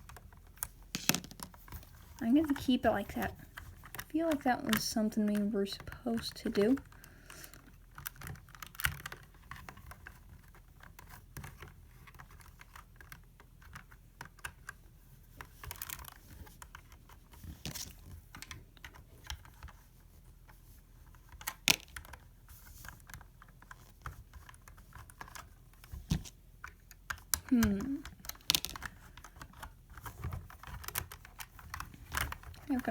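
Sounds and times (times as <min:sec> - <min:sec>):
plastic bricks clicking and rattling: 0:21.4 - 0:32.9.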